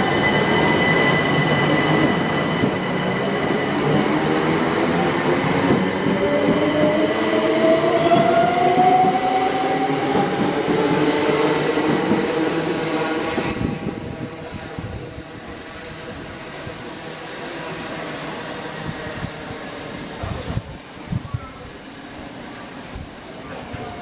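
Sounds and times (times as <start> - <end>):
train whine rising in pitch: 0.0 - 15.5
train wheels rumbling on rail: 0.0 - 20.8.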